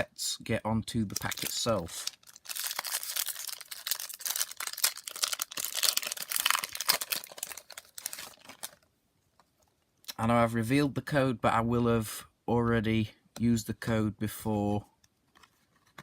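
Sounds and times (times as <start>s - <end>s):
foil pack crinkling and tearing: 1.1s - 8.9s.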